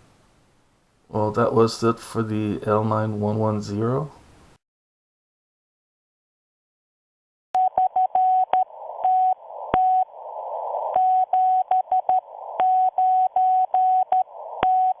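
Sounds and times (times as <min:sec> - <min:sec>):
radio hiss: 0:08.6 - 0:11.3, 0:12.1 - 0:12.8, 0:14.2 - 0:15.0
morse code beeps: 0:11.0 - 0:15.0.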